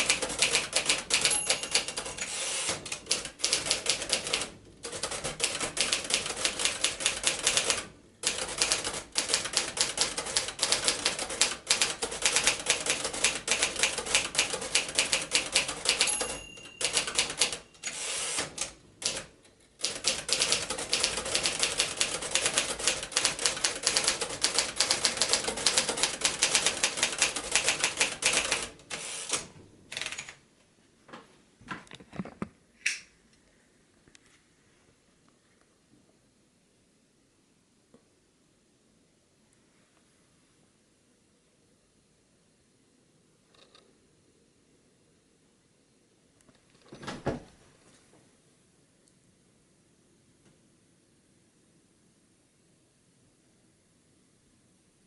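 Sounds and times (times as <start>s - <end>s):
typewriter key strikes: 0.0s - 7.7s, 8.3s - 17.9s.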